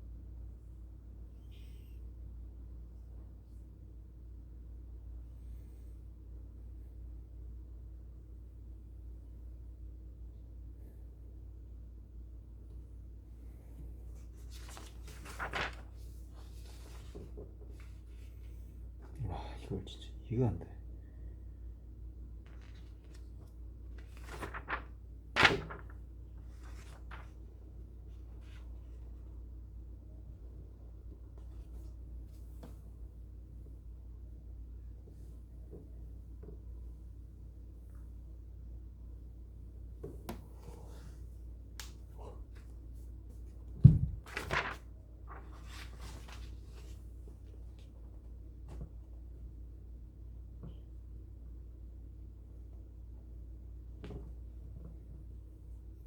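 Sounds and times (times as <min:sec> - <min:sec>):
heavy thump: 0:43.8 - 0:44.2
thunk: 0:43.8 - 0:44.2
short knocks and rustles: 0:43.8 - 0:44.5.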